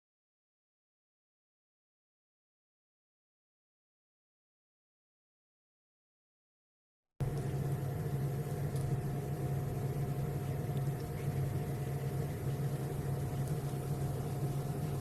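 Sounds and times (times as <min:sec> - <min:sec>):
washing machine motor hum: 0:07.2 - 0:15.0.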